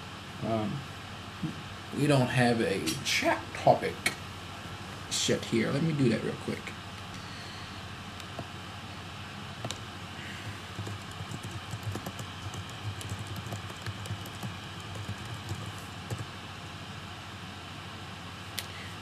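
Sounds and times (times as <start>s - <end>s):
background hum: 0.0s - 19.0s
keyboard typing: 10.7s - 16.3s.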